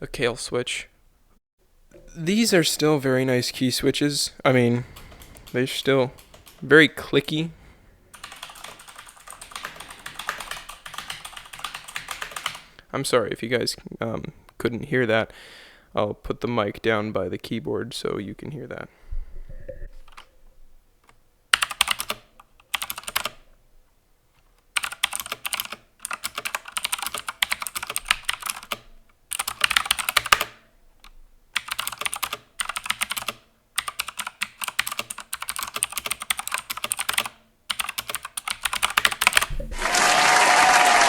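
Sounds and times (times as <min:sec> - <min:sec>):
typing on clicky mechanical keyboard: 0:05.0 - 0:06.7, 0:08.1 - 0:12.7, 0:21.5 - 0:23.4, 0:24.7 - 0:30.6, 0:31.6 - 0:40.2.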